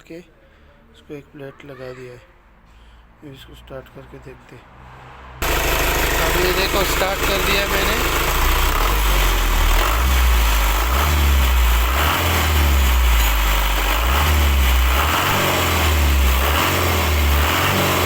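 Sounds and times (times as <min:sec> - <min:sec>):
lorry engine idling: 0:05.4 - 0:18.0.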